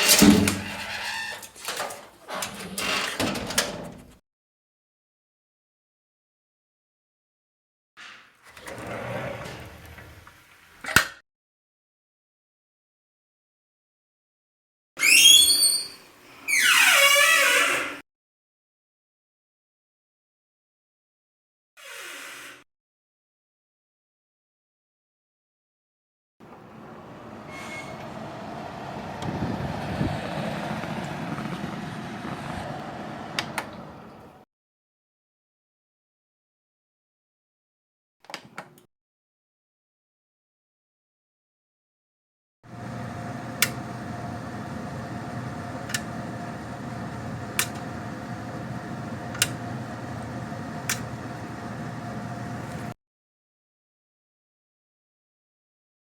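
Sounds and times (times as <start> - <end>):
road vehicle rumble: 26.4 - 34.4
steady machine hum: 42.7 - 52.9.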